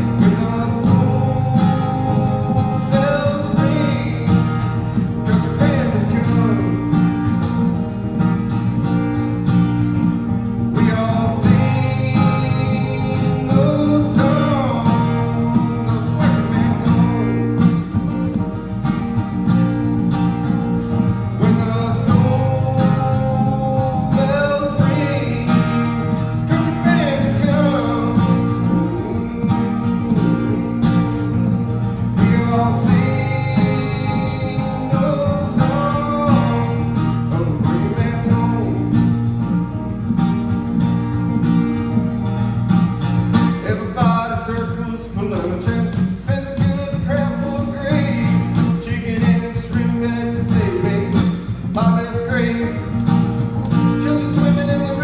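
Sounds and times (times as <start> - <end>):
person singing: 0.0 - 6.9, 10.8 - 18.0, 21.3 - 39.1
strummed guitar: 0.0 - 55.0.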